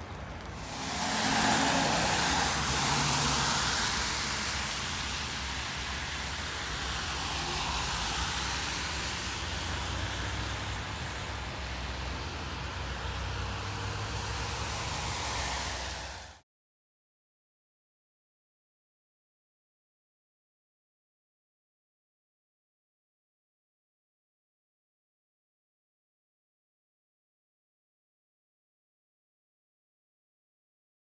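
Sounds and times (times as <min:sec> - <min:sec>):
vehicle passing on wet road: 0:00.0 - 0:16.4
wet road noise hiss: 0:00.0 - 0:16.4.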